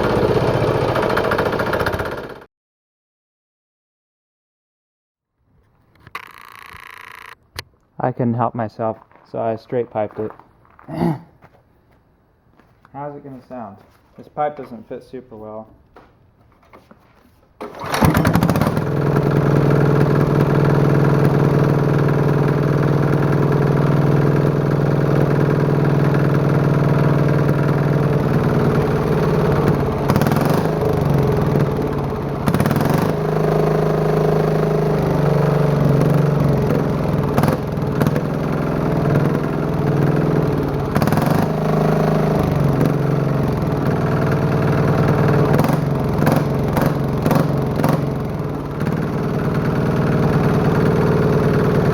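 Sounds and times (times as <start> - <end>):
diesel engine running loud: 0.0 - 2.4, 17.8 - 51.9.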